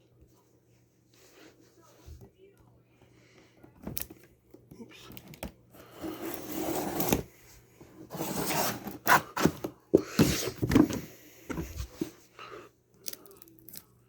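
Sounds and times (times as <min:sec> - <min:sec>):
cardboard rubbing and scraping: 0:06.0 - 0:07.3, 0:08.0 - 0:11.0.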